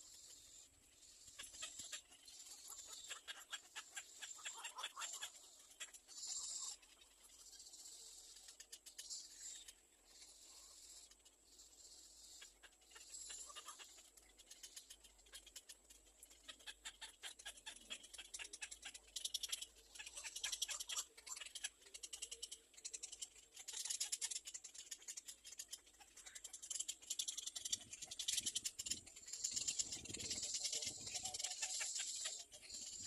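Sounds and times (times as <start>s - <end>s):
nestling birds begging chirps: 0.0s - 33.0s.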